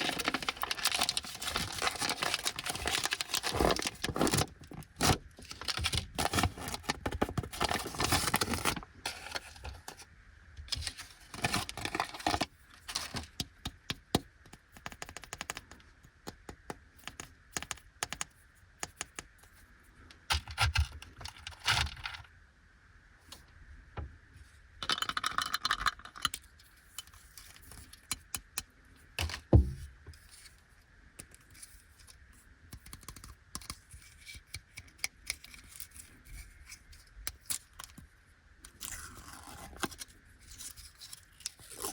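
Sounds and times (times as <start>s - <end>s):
plastic wrappers crinkling: 0.0s - 9.4s
clicks and taps: 13.4s - 19.4s.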